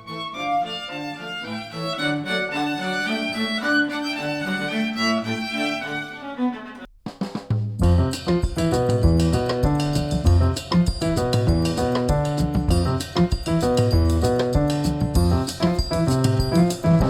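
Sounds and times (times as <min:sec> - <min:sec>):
instrumental music through headphones: 0:07.3 - 0:17.0
music with heavy bass: 0:07.8 - 0:17.0.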